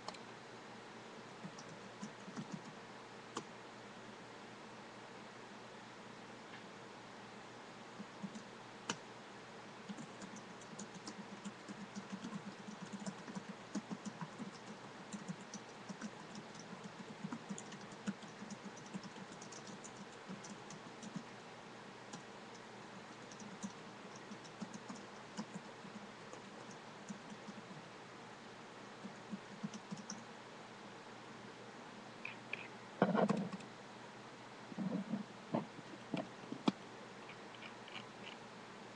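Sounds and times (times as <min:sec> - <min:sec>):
background hiss: 0:00.0 - 0:38.9
computer keyboard typing: 0:01.4 - 0:02.7, 0:08.0 - 0:09.0, 0:09.9 - 0:21.3, 0:22.1 - 0:27.8, 0:29.0 - 0:30.2.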